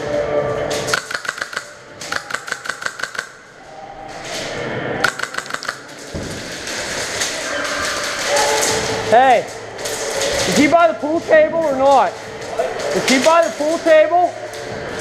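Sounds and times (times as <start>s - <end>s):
airsoft guns firing full auto: 0.9s - 3.4s, 5.0s - 6.0s.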